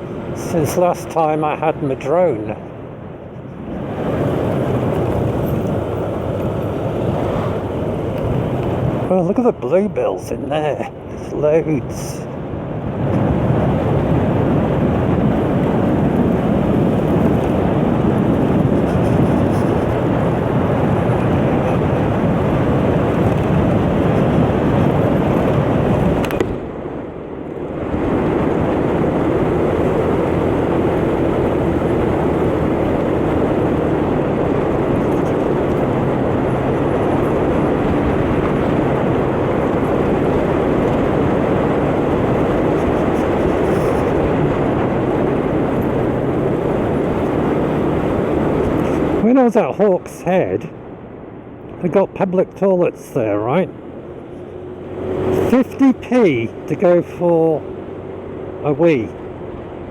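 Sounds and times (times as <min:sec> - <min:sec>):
wind rushing over microphone: 0:00.0 - 0:59.9
motor scooter engine running: 0:28.5 - 0:49.2.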